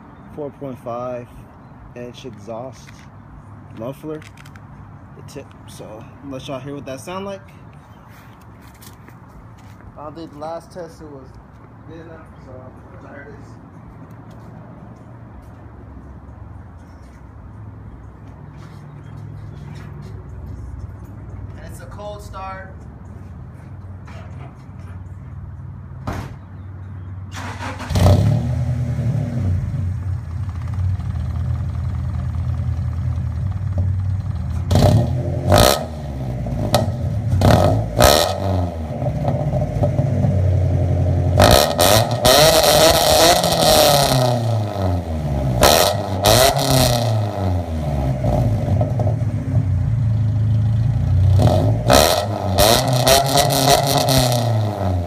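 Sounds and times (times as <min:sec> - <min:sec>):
car engine starting and revving: 0:27.3 - 0:31.3, 0:34.5 - 0:55.0.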